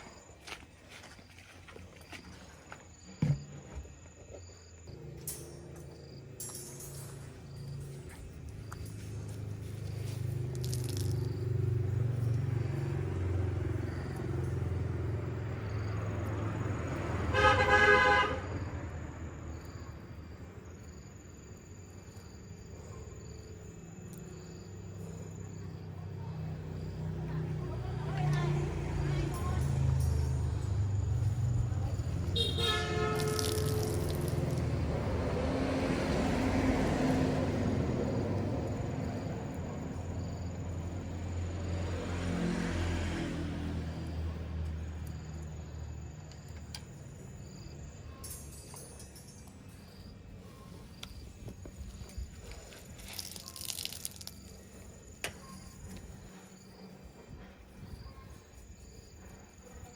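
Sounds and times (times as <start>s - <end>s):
vehicle engine running low: 7.0s - 17.6s, 23.6s - 48.0s
car horn honk: 17.3s - 18.5s, 32.3s - 34.0s
low engine rumble: 24.8s - 42.1s.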